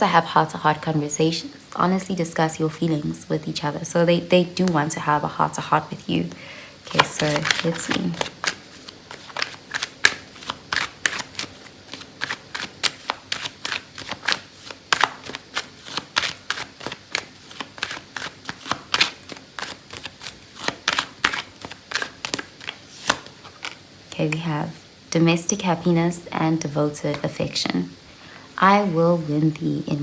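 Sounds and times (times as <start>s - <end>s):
cards being shuffled: 6.2s - 24.8s.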